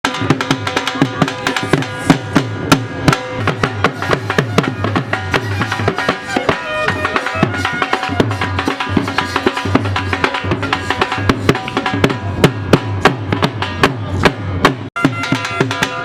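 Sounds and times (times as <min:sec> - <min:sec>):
fast hand-drum beats: 0:00.0 - 0:16.0
held melodic tones: 0:00.9 - 0:12.5.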